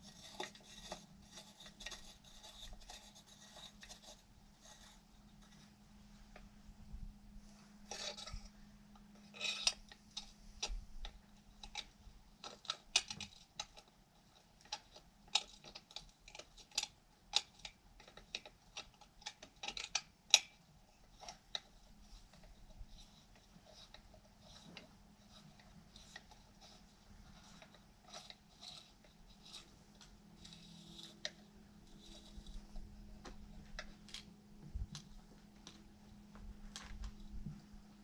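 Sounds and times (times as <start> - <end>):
hex key scraping: 0.0 - 5.7, 9.2 - 10.4, 21.2 - 34.3.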